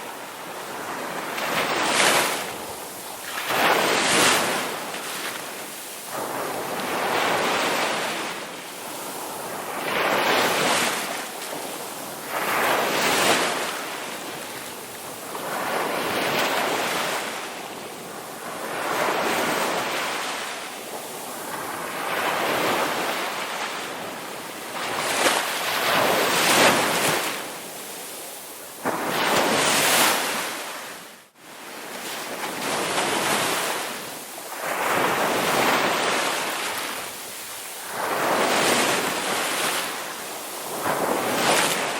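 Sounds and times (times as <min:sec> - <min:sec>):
sea waves breaking on beach: 0:00.0 - 0:41.9.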